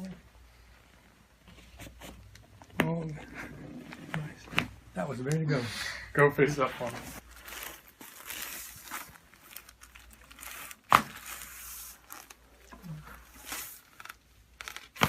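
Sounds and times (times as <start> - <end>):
rustling and crinkling: 6.4 - 15.0.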